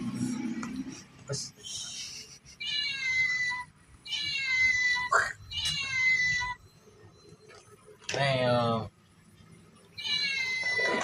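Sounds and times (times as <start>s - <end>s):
toy cat electronic meow: 2.6s - 6.6s, 10.0s - 11.0s.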